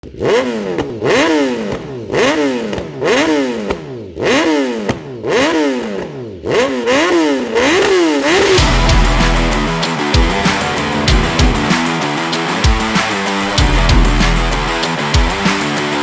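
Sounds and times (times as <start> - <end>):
motorcycle engine revving: 0.1 - 9.6, 10.4 - 11.9, 13.4 - 13.8.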